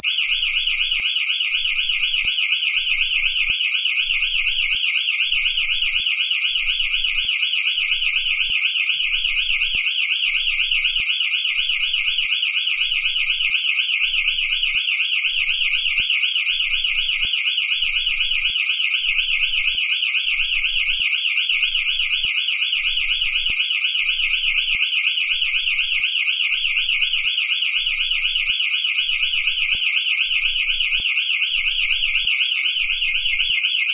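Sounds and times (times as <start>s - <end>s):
warbling security alarm siren: 0.0s - 33.9s.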